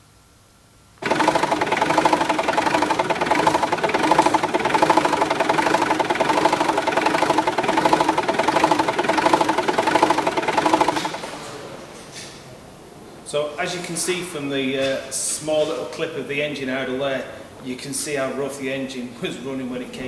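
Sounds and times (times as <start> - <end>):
diesel engine idling roughly: 1.0 - 11.2.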